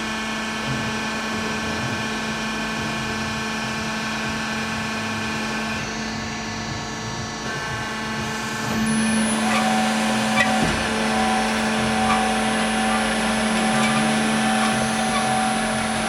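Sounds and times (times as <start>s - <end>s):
band saw humming: 7.6s - 16.0s.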